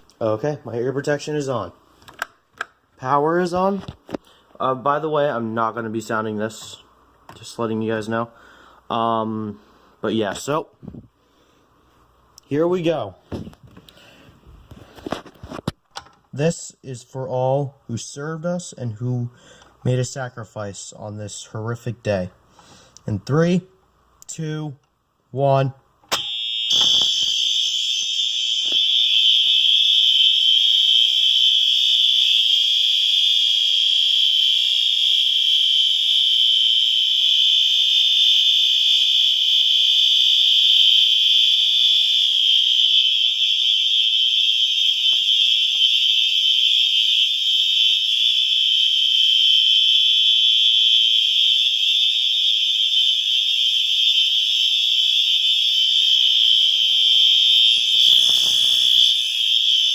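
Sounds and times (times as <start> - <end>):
fire alarm horn steady tone: 26.1 - 59.9.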